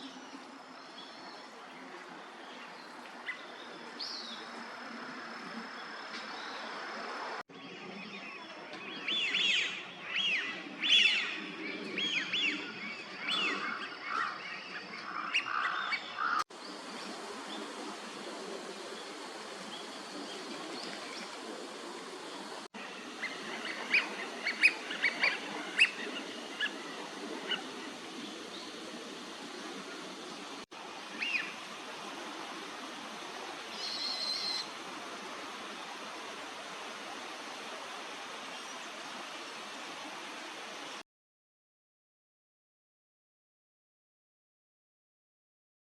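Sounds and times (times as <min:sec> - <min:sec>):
steady background hiss: 0:00.0 - 0:41.0.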